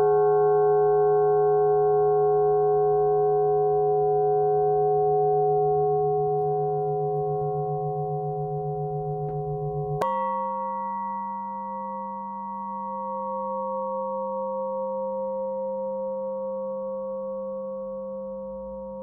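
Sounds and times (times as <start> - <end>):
flat metal bell ringing: 10.0 - 17.8.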